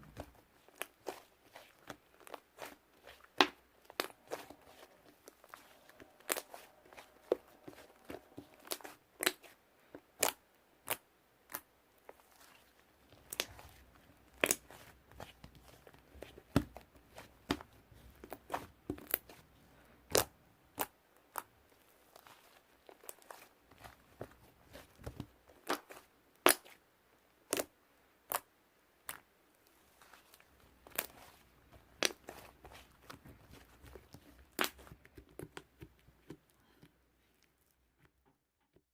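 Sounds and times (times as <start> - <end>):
slime popping and crackling: 0.1 - 9.5, 13.1 - 19.4, 20.1 - 26.8, 30.2 - 36.3.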